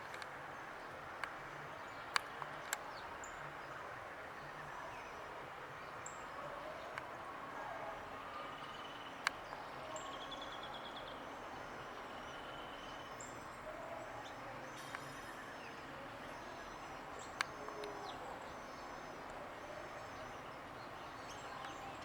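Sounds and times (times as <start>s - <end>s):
bird calls: 6.0s - 22.0s.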